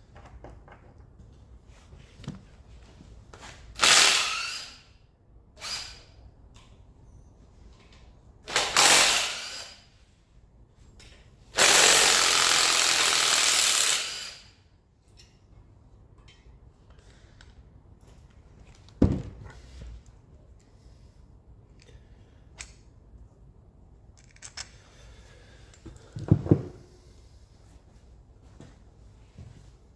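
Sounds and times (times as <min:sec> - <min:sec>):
power tool undoing bolts: 0:03.8 - 0:04.8, 0:08.5 - 0:09.8, 0:11.6 - 0:14.4.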